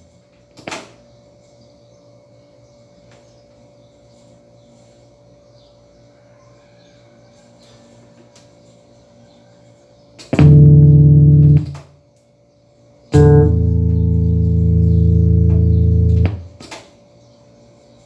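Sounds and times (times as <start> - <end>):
amp hum and hiss: 0.0 - 6.0, 10.2 - 18.0
electric guitar chords: 10.4 - 11.9, 13.1 - 16.6.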